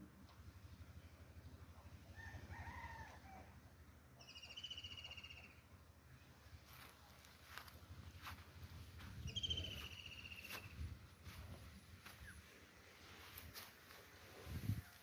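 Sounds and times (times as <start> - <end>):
faint rooster crowing: 1.8 - 3.8, 14.4 - 15.0.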